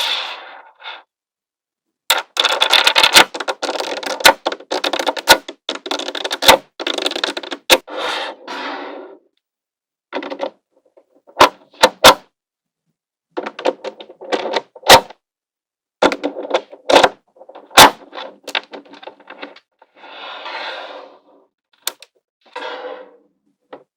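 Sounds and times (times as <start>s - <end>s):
magnetic balls snapping and rattling: 2.1s - 7.8s.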